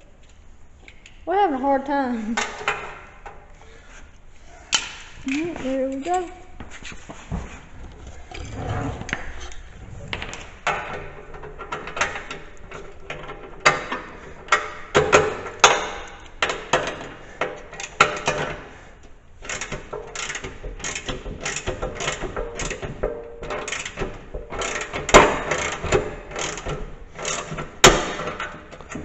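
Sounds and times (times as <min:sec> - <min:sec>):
ratchet wrench clicking: 0:19.4 - 0:22.2.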